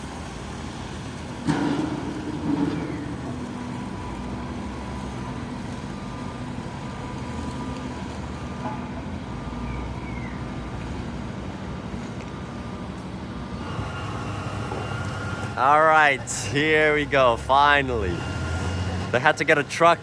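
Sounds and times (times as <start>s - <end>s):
large diesel engine running: 0.0s - 20.0s
loud metal clanks: 1.4s - 4.1s.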